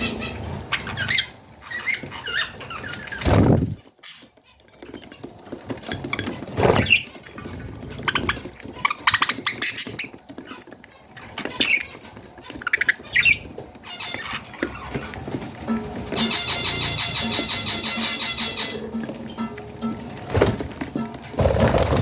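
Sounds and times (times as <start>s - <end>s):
baby budgerigars chirping: 0.0s - 20.4s.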